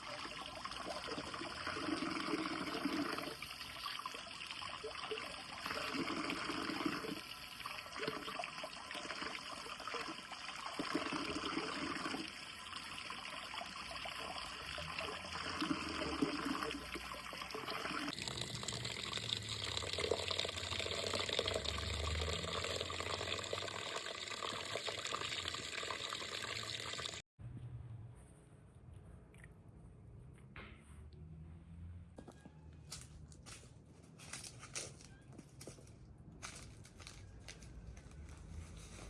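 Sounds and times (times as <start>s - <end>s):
water running and trickling: 0.0s - 27.2s.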